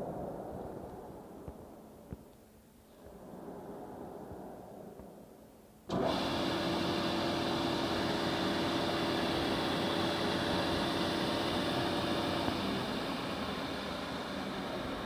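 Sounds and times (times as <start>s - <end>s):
panel saw running: 5.9s - 15.0s.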